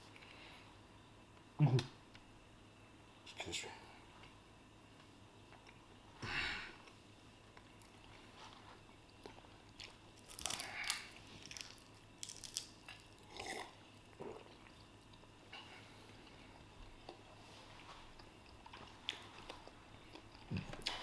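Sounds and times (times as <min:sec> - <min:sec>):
people chewing and biting food: 0:09.1 - 0:21.0.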